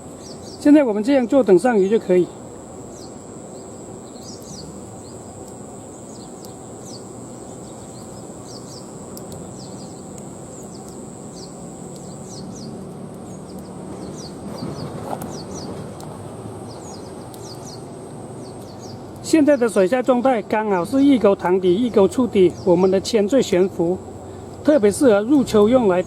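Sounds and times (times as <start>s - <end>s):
low background rush: 0.0s - 26.0s
steady high-pitched hum: 0.0s - 26.0s
high downward chirps: 1.6s - 19.0s.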